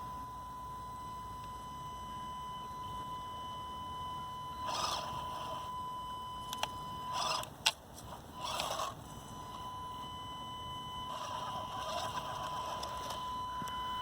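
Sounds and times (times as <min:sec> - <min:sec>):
steady high whine: 0:00.0 - 0:14.0
small motor and gears whirring: 0:04.4 - 0:10.2, 0:10.8 - 0:13.9.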